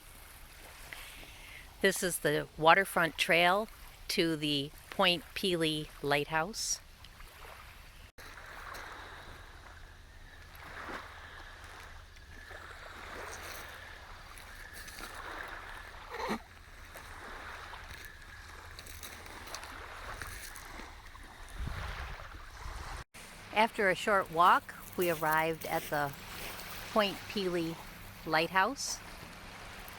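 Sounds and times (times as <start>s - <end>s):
waves washing against shore: 7.3s - 29.9s.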